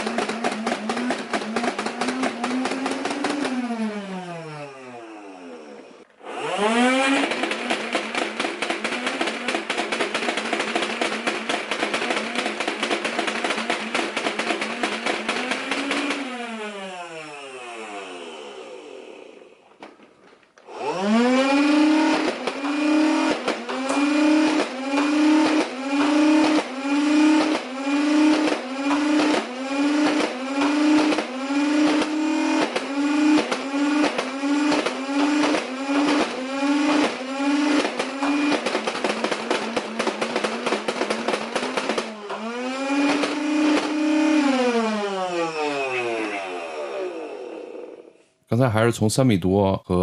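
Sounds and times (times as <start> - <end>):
toy blaster motor whirring: 0.0 - 19.5, 20.7 - 48.2
blaster clicks: 22.0 - 44.6.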